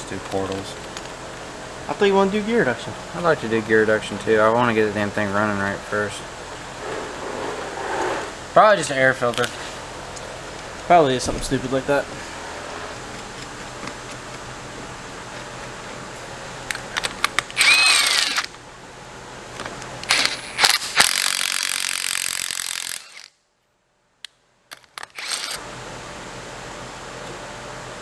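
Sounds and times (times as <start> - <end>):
shop hum: 0.0 - 23.3, 24.7 - 28.0
power tool whining: 16.7 - 18.6, 20.0 - 23.3, 24.7 - 25.6.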